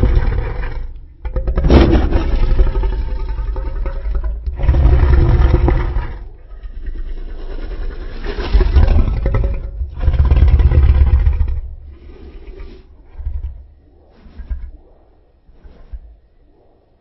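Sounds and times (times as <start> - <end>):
deep monster roars: 0.0 - 14.8
low rumbling: 0.0 - 17.0.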